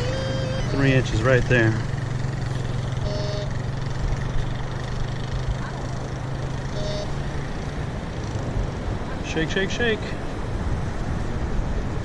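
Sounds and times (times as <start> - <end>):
steady low drone: 0.0 - 4.9.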